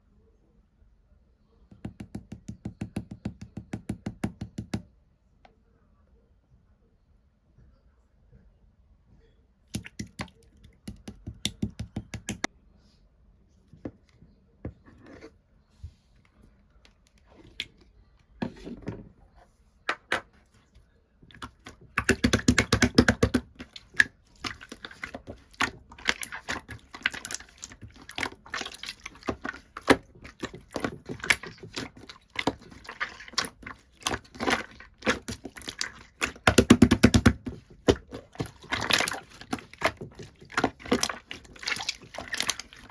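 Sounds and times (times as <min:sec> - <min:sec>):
slime being squished by hand: 0:21.3 - 0:42.9
slime clicking and crackling: 0:21.3 - 0:42.9.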